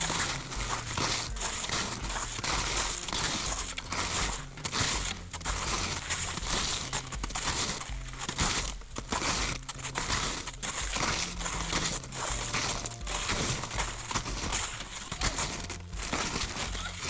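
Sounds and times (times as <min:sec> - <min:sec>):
snowshoe footsteps crunching snow: 0:00.0 - 0:17.0.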